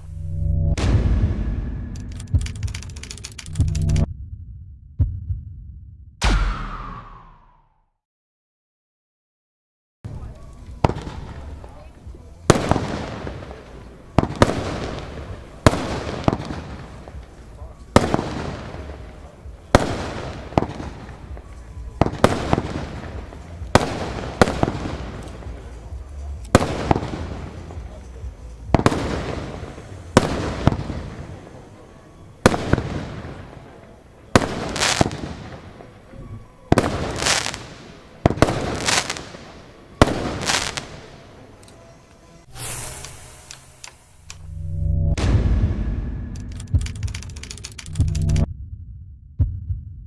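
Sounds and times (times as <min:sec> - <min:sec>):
firework bangs with hiss: 0:10.8 - 0:31.6, 0:34.4 - 0:35.7, 0:36.7 - 0:41.1.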